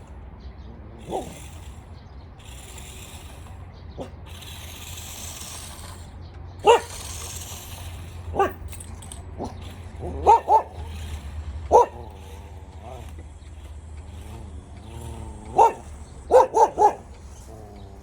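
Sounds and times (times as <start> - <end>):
dog barking: 1.0 - 1.6, 6.6 - 7.1, 8.3 - 8.7, 9.4 - 13.2, 14.2 - 17.8
high whirring hiss: 1.0 - 18.0.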